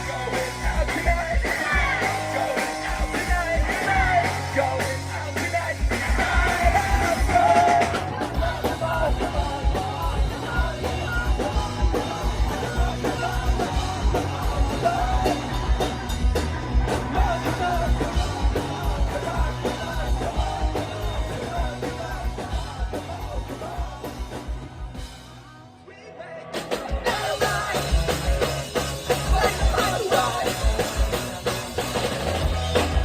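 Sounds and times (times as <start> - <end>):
person singing: 0.0 - 31.6
live rock band playing: 0.0 - 33.0.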